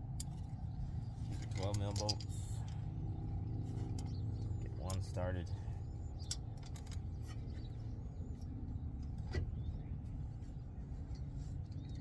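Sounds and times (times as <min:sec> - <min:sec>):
low vehicle rumble: 0:00.0 - 0:12.0
light metallic clicks: 0:01.3 - 0:03.0, 0:03.6 - 0:10.2.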